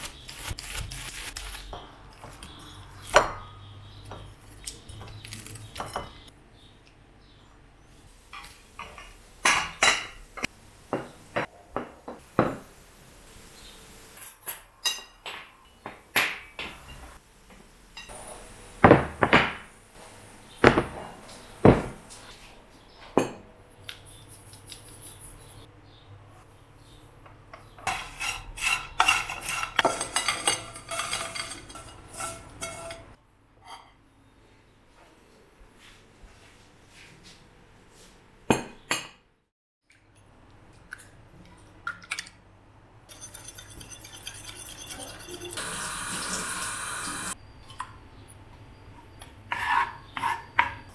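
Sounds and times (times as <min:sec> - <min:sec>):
dishes and cutlery clinking: 0:05.8 - 0:06.3, 0:14.2 - 0:17.2, 0:27.6 - 0:34.0, 0:43.1 - 0:45.7.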